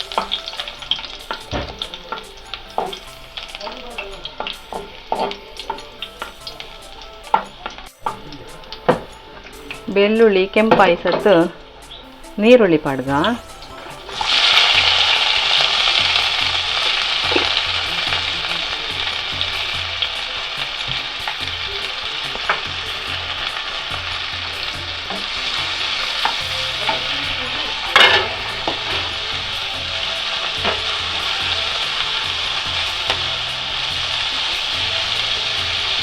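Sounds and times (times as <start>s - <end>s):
onions sizzling in oil: 0.0s - 36.0s
stirring clinks: 25.0s - 32.2s.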